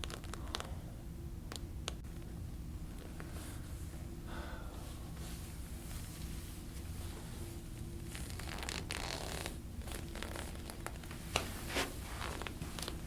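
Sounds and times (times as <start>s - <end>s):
hands rubbing skin during massage: 8.0s - 13.0s.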